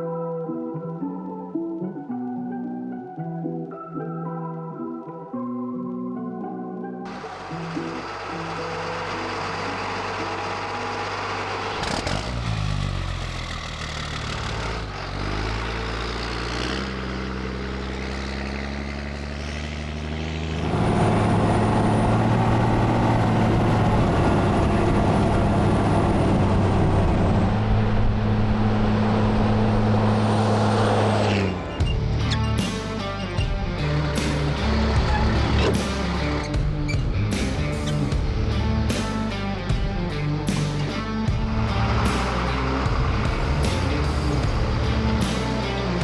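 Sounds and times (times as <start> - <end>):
diesel truck engine under load: 7.1 - 46.0
high whine: 20.7 - 46.0.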